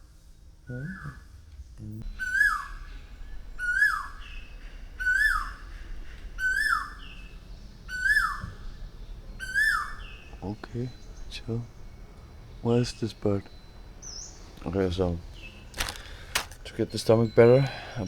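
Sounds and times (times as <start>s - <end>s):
bird whistled call: 2.1s - 11.3s.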